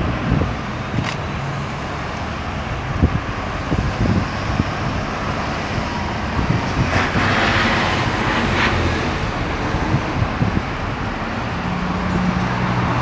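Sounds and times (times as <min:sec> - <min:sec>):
highway traffic: 0:00.0 - 0:13.0
vehicle passing close by: 0:04.4 - 0:13.0.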